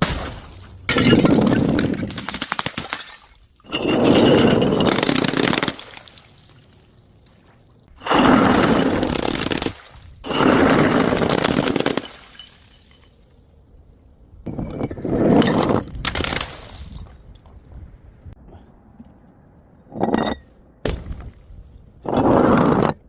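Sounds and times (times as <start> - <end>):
glass bottles shattering: 0.0 - 6.8, 8.0 - 13.2, 14.7 - 17.2.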